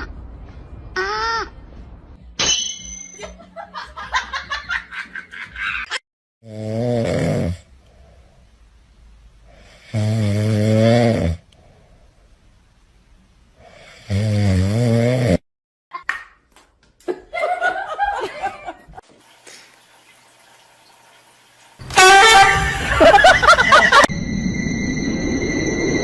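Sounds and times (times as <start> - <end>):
loud snoring: 6.4 - 7.7, 9.6 - 11.5, 13.7 - 15.4.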